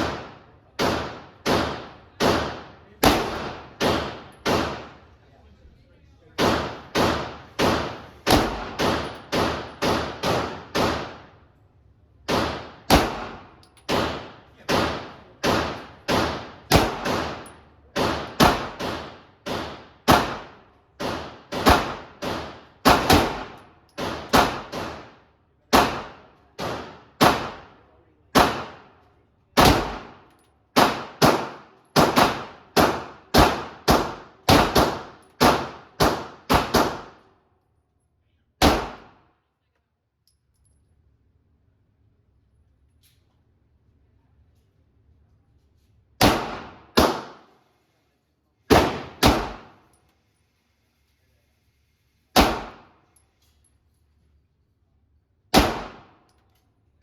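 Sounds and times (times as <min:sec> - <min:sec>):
pistol shots: 0:00.0 - 0:05.1, 0:06.4 - 0:11.4, 0:12.3 - 0:29.0, 0:29.6 - 0:37.2, 0:38.6 - 0:39.2, 0:46.2 - 0:47.5, 0:48.7 - 0:49.8, 0:52.3 - 0:53.0, 0:55.5 - 0:56.3.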